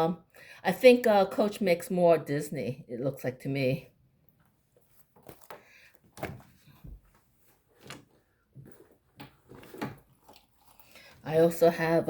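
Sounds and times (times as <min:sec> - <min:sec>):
soft handling clicks and rustles: 0:04.2 - 0:11.3.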